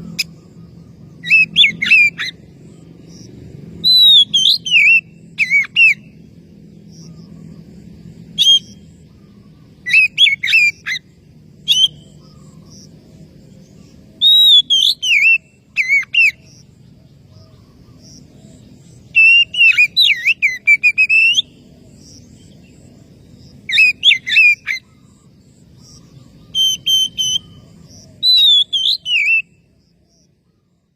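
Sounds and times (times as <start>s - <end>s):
bird singing whistled phrases: 1.2s - 2.4s, 3.8s - 6.2s, 8.3s - 8.9s, 9.8s - 11.0s, 11.6s - 12.3s, 14.2s - 16.5s, 19.1s - 21.6s, 23.7s - 25.0s, 25.9s - 29.6s.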